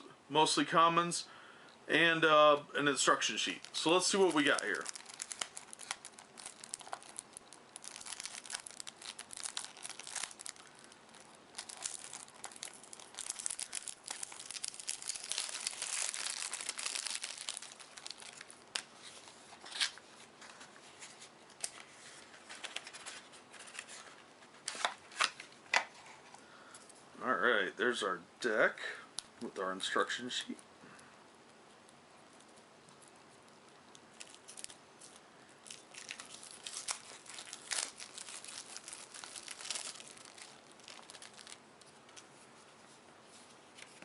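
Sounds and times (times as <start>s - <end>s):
package tearing and rustling: 3.1s - 26.2s, 34.1s - 42.2s.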